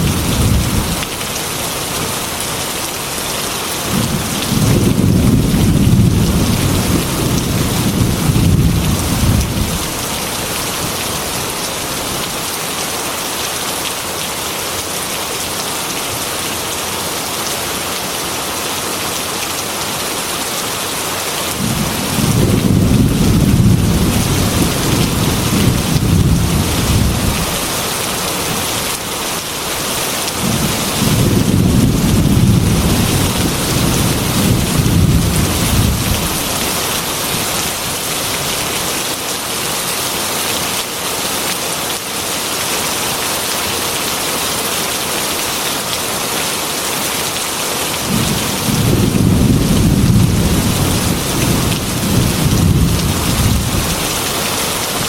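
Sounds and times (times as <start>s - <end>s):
thunder rumbling: 0.0s - 1.0s, 3.9s - 11.0s, 21.6s - 27.7s, 30.4s - 36.8s, 48.0s - 54.3s
heavy rain on window glass: 0.0s - 55.0s.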